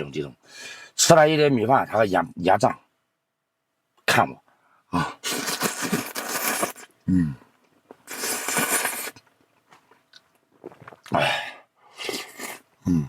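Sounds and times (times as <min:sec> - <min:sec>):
man slurping noodles: 0:05.0 - 0:06.9, 0:08.0 - 0:09.2, 0:10.6 - 0:13.0
man grunting: 0:07.1 - 0:07.4.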